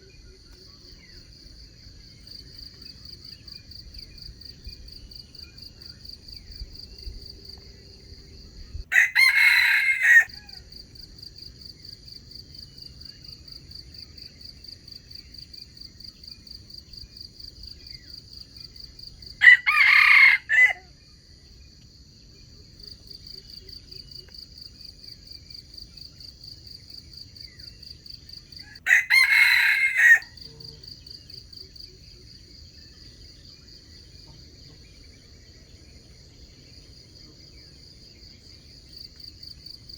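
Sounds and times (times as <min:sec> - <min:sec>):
insects trilling: 0:00.0 - 0:21.6, 0:22.3 - 0:39.9
rooster crowing: 0:08.9 - 0:10.7, 0:19.4 - 0:20.9, 0:28.6 - 0:30.7.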